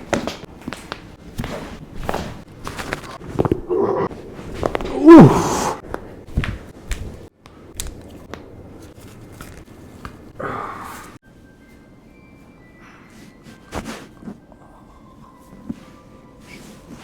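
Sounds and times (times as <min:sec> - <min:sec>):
person's vocal cry falling in pitch: 0:04.9 - 0:05.8
breathy sigh: 0:05.0 - 0:05.8.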